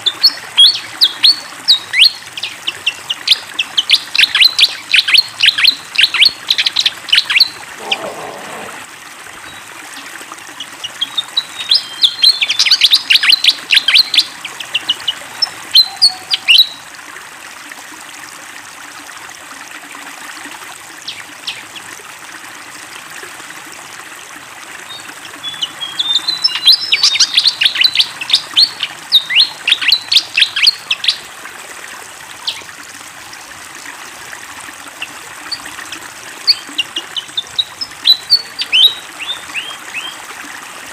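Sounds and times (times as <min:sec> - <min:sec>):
flowing water: 0:00.0 - 0:40.9
bird chirping rapidly: 0:11.0 - 0:16.8, 0:25.4 - 0:31.2, 0:36.5 - 0:40.2.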